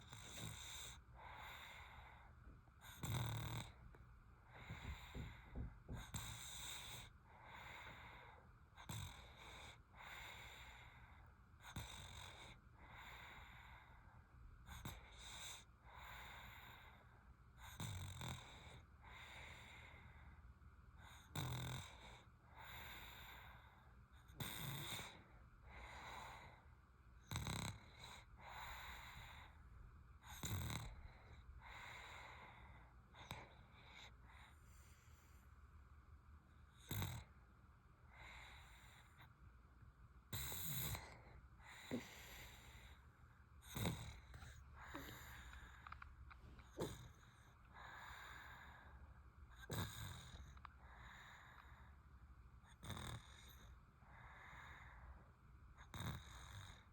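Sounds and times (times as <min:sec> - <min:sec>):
baby snoring faintly: 0:00.0 - 0:02.3, 0:02.9 - 0:03.9, 0:04.5 - 0:14.1, 0:21.1 - 0:26.7, 0:27.3 - 0:29.6, 0:40.3 - 0:43.0, 0:43.6 - 0:52.0.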